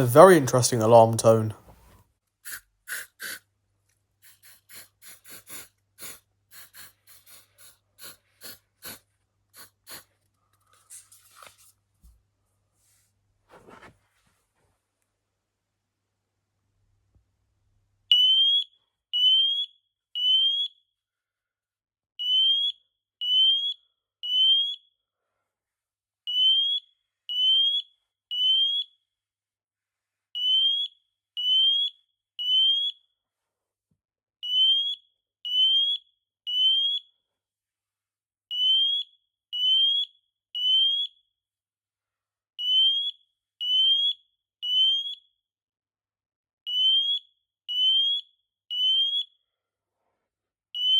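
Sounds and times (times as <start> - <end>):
smoke alarm beeping: 18.1 - 20.8, 22.2 - 24.8, 26.3 - 28.9, 30.4 - 33.0, 34.4 - 37.0, 38.5 - 41.1, 42.6 - 45.2, 46.7 - 49.3.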